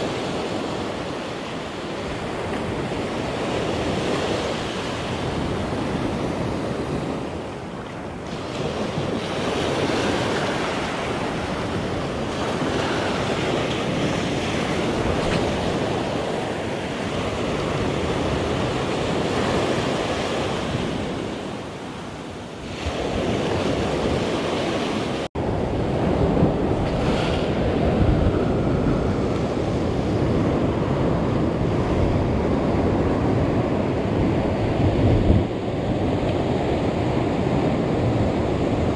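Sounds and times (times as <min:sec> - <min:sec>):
sea waves washing ashore: 0:00.0 - 0:38.9
wind buffeting microphone: 0:08.2 - 0:21.4, 0:22.7 - 0:38.9.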